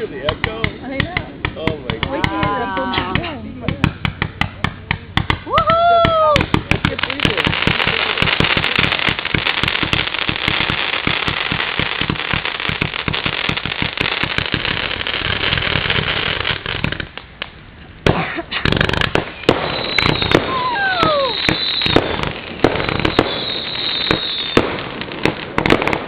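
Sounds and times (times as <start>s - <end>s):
crackling fireworks: 0.0s - 26.0s
loud firework bangs: 0.0s - 26.0s
falling firework whistles: 18.6s - 24.8s.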